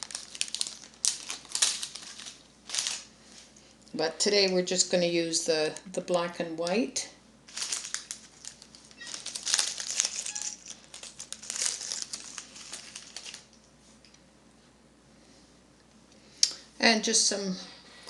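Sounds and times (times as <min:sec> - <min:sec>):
plastic bag crinkling: 0:00.0 - 0:03.6, 0:07.5 - 0:13.7.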